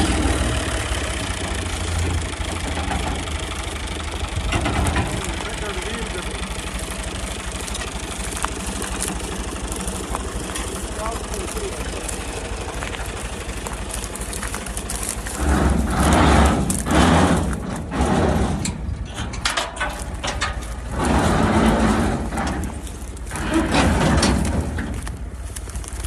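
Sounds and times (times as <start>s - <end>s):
tractor engine hum: 0.0s - 26.0s
clicks and rattles: 1.0s - 26.0s
thresher rushing surges: 20.9s - 22.7s.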